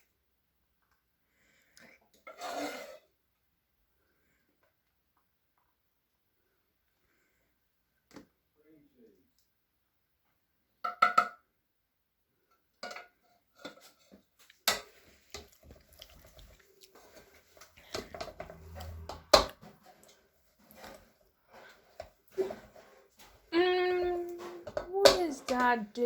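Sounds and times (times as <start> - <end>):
dishes and pots clattering: 12.8 - 15.5, 24.0 - 25.8.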